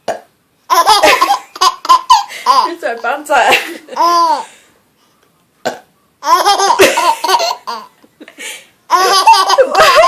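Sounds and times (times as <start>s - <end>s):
burp: 0.0s - 0.3s, 5.6s - 5.9s
baby giggling: 0.7s - 2.8s, 3.7s - 4.5s, 6.2s - 8.0s, 8.9s - 10.0s.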